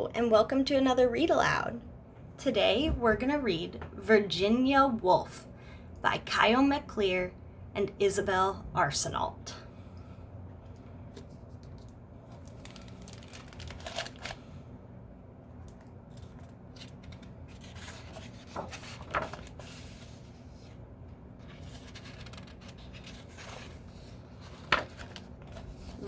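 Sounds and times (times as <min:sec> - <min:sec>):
low steady hum: 0:00.0 - 0:26.0
pages turning: 0:11.1 - 0:14.4, 0:15.7 - 0:20.8, 0:21.4 - 0:26.0.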